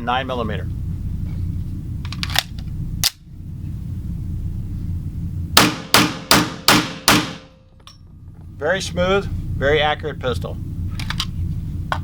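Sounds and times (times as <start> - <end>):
steady low rumble: 0.0 - 12.0
pistol shots: 5.6 - 7.5.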